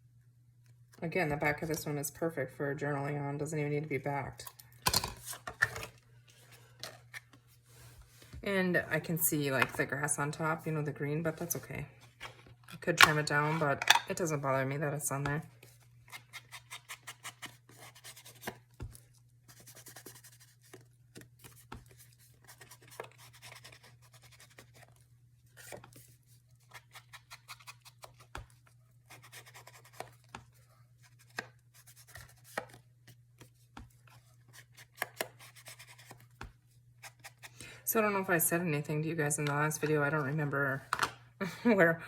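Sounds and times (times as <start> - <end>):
paper being cut and handled: 19.5 - 24.9, 25.6 - 28.4, 29.1 - 30.3.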